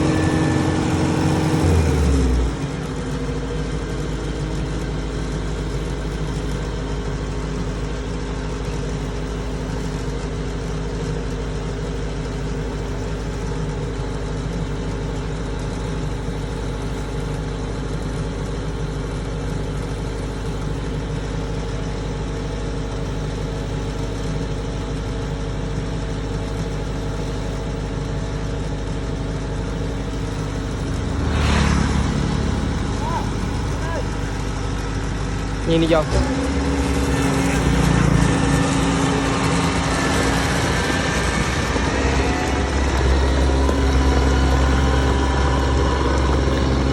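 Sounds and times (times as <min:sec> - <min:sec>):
combine harvester engine drone: 0:00.0 - 0:46.9
low rumble: 0:29.8 - 0:46.9.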